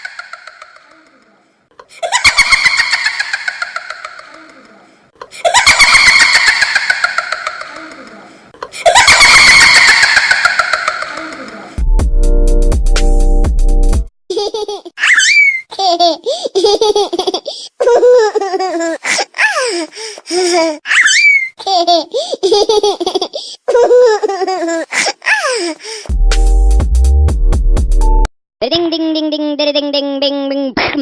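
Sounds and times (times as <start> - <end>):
baby giggling: 0.0 - 1.2, 2.0 - 11.8, 14.3 - 25.7
bass-heavy music ringtone: 11.8 - 14.1, 26.1 - 28.3.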